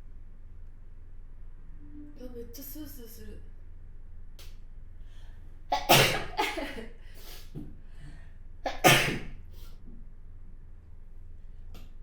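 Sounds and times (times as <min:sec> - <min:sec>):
woman sneezing: 0:05.8 - 0:07.5
quick catch of breath: 0:07.0 - 0:08.4.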